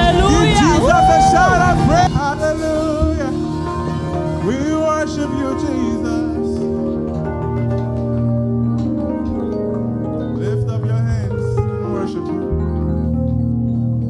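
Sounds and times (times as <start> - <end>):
voices singing: 0.0 - 7.1
band playing: 0.0 - 14.0.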